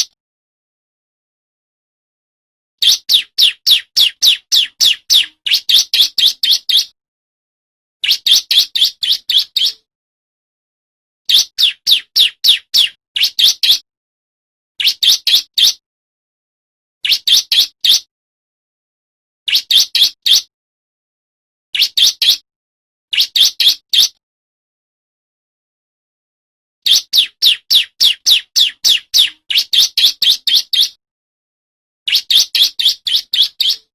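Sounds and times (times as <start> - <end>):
bird singing rapid sharp chirps: 2.8 - 7.0, 8.0 - 9.9, 11.3 - 13.8, 14.8 - 15.8, 17.0 - 18.1, 19.5 - 20.5, 21.8 - 22.4, 23.1 - 24.2, 26.8 - 31.0, 32.1 - 33.9.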